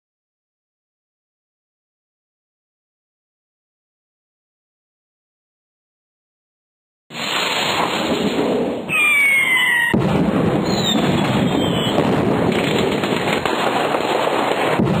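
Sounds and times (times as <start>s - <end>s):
rocket engine roar with crackle: 7.1s - 15.0s
falling whistle: 8.9s - 10.0s, 10.6s - 12.0s.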